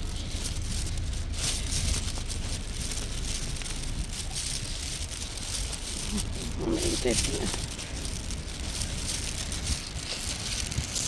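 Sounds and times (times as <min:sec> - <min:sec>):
steady rain falling: 0:00.0 - 0:11.0
wind rumble on microphone: 0:00.0 - 0:11.0.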